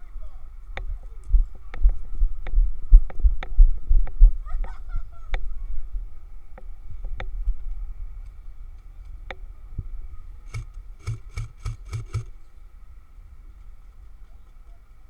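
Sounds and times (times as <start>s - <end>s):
airsoft gun shots: 10.5s - 12.4s.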